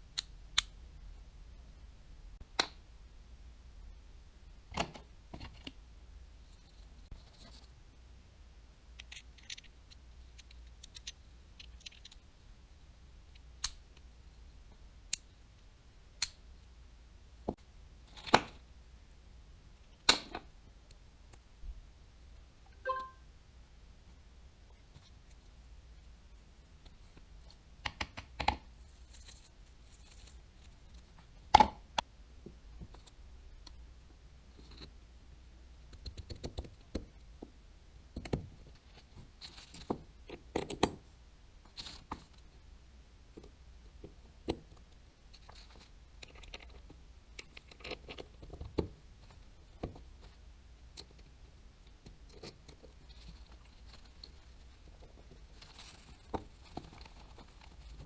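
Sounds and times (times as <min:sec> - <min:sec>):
small parts clicking and scraping: 0:08.8 - 0:12.3, 0:26.8 - 0:31.2, 0:43.3 - 0:58.0.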